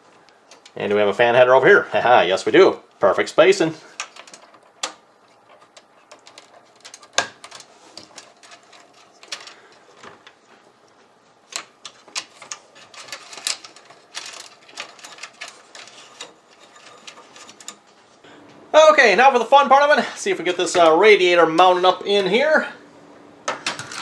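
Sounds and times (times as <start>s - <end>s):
plastic clicks and rattles: 4.0s - 10.4s, 11.5s - 17.8s.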